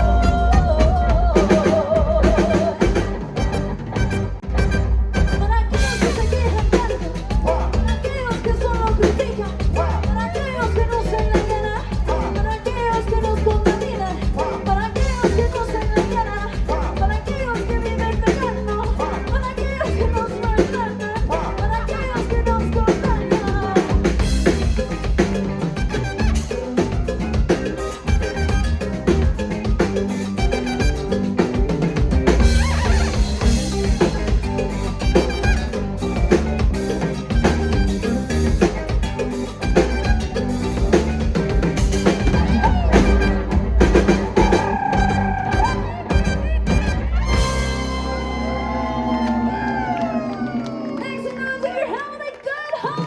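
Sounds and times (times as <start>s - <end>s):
person singing: 0.0s - 3.3s, 5.4s - 24.9s
drum kit beat: 0.0s - 52.0s
live band music: 0.0s - 53.0s.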